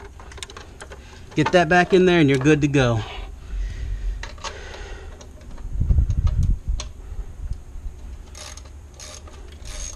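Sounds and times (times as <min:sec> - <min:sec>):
low rumble of handling: 0:00.0 - 0:09.9
clicks of parts being handled: 0:04.2 - 0:07.0.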